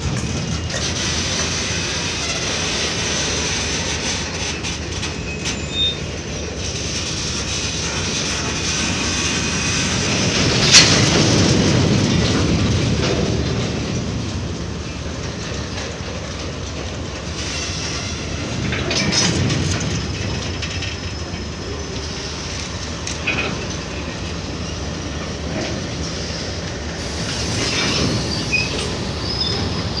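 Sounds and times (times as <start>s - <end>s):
train wheels clattering over rail joints: 0.0s - 30.0s
metallic wheel squeals: 1.2s - 6.8s, 27.5s - 30.0s.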